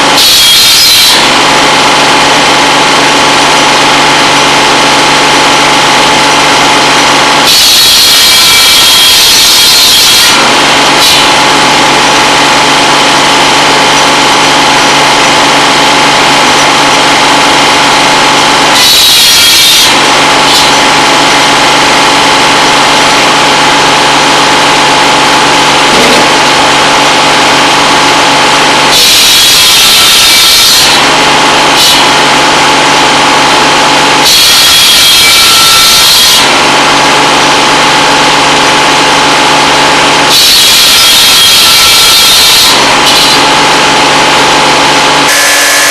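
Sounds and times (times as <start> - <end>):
buzz saw running with humming whine: 0.0 - 45.9
saw cutting into pole: 7.4 - 17.2, 18.5 - 22.0, 25.7 - 27.9, 40.3 - 45.9.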